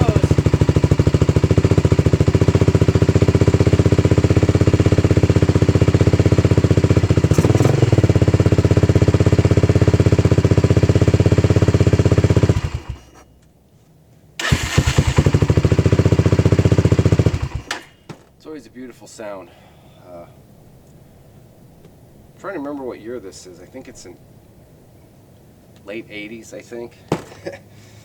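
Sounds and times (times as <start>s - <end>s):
small engine puttering: 0.0s - 13.3s, 14.4s - 18.0s.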